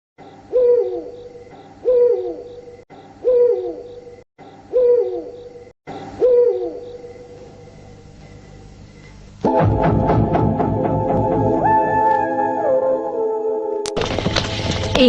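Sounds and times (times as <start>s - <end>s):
owl hooting: 0.2s - 8.0s.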